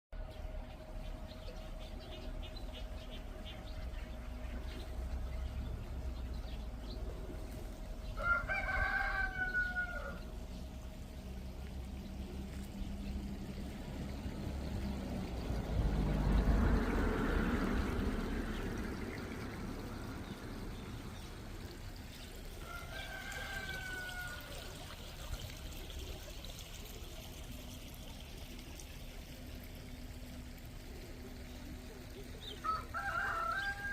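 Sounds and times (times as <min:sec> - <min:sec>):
distant rooster crowing: 0:08.0 - 0:10.4, 0:22.6 - 0:24.7, 0:32.5 - 0:33.9.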